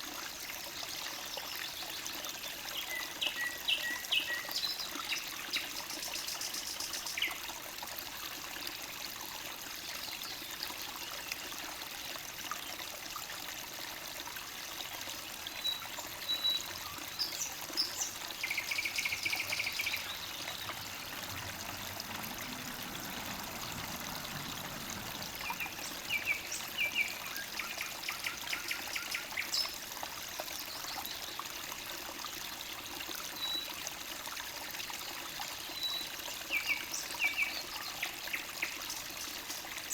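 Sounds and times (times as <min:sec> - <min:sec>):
stream babbling: 0:00.0 - 0:39.9
songbirds calling: 0:15.6 - 0:22.4, 0:25.2 - 0:29.8.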